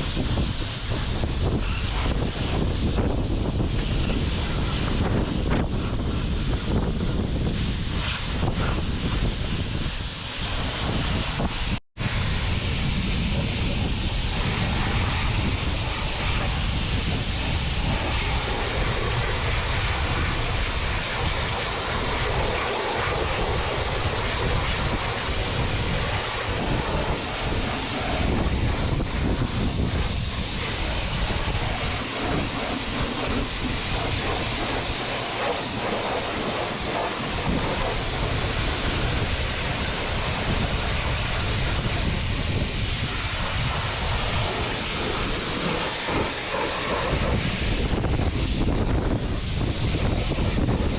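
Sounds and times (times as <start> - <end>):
pressure washer water jet hissing: 0.0 - 50.8
pump running: 21.1 - 41.3.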